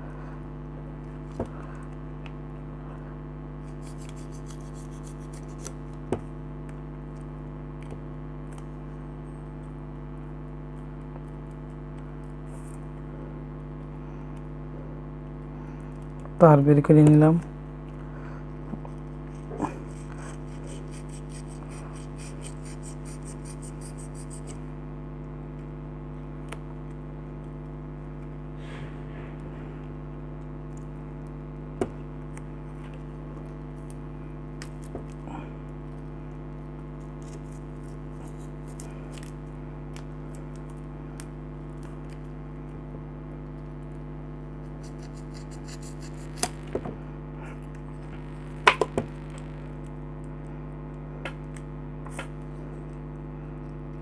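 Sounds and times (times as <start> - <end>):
low electrical hum: 0.0 - 54.0.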